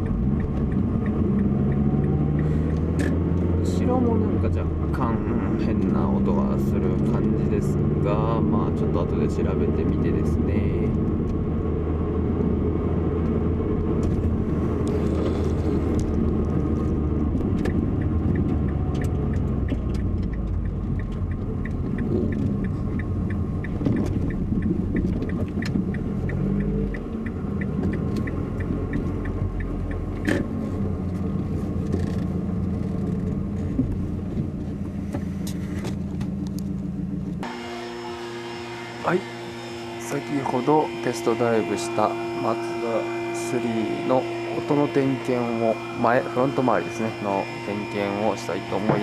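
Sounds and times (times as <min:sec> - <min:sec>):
light regular ticking: 0:00.0 - 0:03.6, 0:15.8 - 0:34.5
car engine and road rumble: 0:00.0 - 0:49.0.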